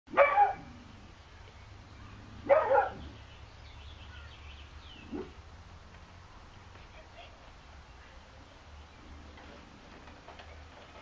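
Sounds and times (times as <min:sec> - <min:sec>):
dog barking: 0:00.1 - 0:00.7, 0:02.4 - 0:03.1, 0:05.0 - 0:05.4.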